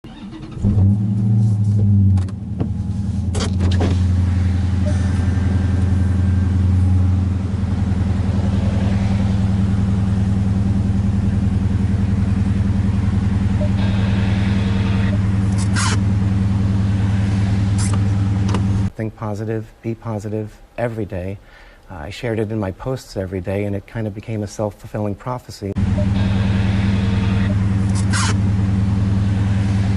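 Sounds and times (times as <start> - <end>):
car engine idling: 0.0 - 18.9, 25.8 - 29.9.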